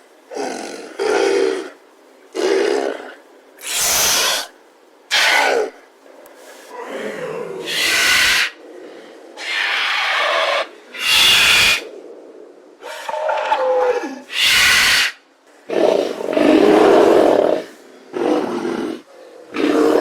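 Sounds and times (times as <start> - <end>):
dinosaur hisses and snorts: 15.7 - 20.0.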